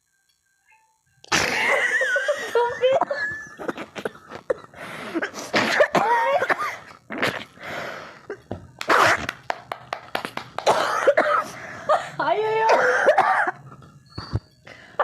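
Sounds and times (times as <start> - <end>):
woman coughing: 1.3 - 7.5, 10.6 - 11.6, 12.6 - 13.6
woman sneezing: 5.5 - 6.6, 12.6 - 13.5.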